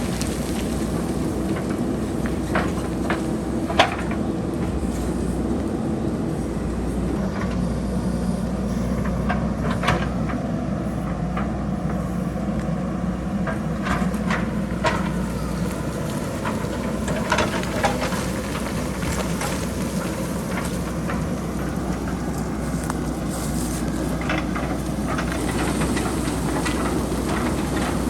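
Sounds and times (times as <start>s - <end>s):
rocks clattering down: 0.0s - 5.0s
diesel engine running: 0.0s - 28.0s.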